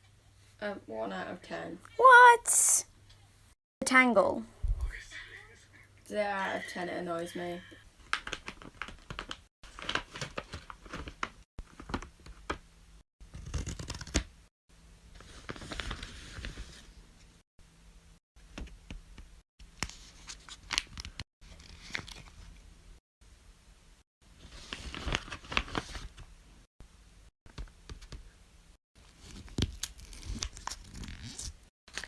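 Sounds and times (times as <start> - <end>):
crinkling and rustling: 8.1 - 12.6.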